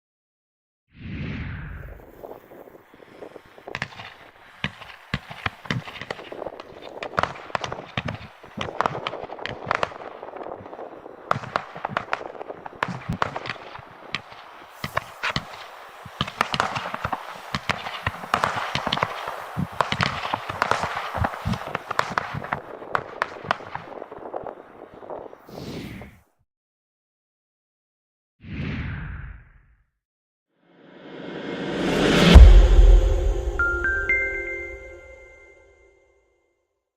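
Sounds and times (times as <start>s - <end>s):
firework hiss: 1.8s - 26.1s
firework crackling pops: 1.8s - 26.2s.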